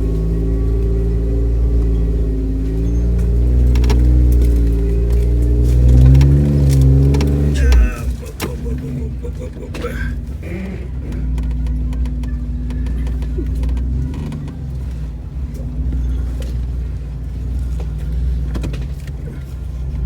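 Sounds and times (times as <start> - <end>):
off-road vehicle engine running: 0.0 - 20.0.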